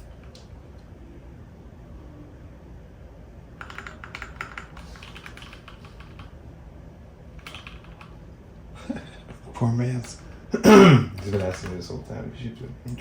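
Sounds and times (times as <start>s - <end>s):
faint low hum: 0.0s - 13.0s
computer keyboard typing: 3.6s - 6.4s, 7.4s - 8.3s, 11.1s - 11.9s.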